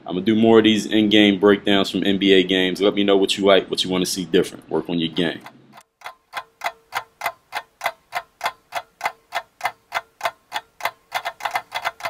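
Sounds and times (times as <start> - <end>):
clock-like ticking: 5.2 - 12.0.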